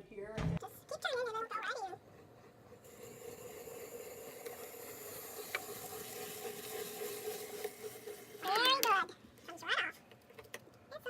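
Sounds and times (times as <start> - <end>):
apple peeler shaving peel: 1.0 - 9.6.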